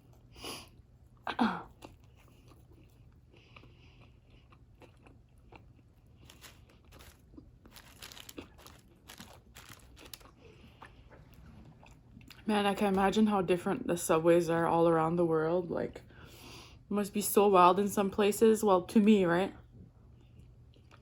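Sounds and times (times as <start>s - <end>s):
chewing and biting sandwich: 0.0s - 12.4s, 20.0s - 21.0s.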